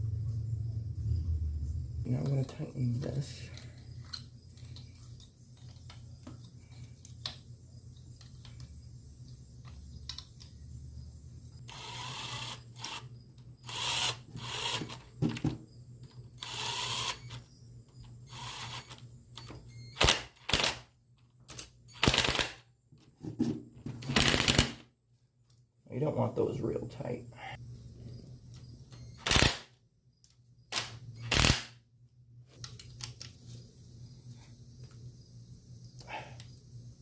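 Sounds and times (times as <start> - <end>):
power tool bursts tightening bolts: 11.6 - 15.1, 16.4 - 17.4, 18.2 - 19.0, 19.9 - 20.8, 22.0 - 22.6, 24.1 - 24.8, 29.2 - 29.7, 30.7 - 31.7.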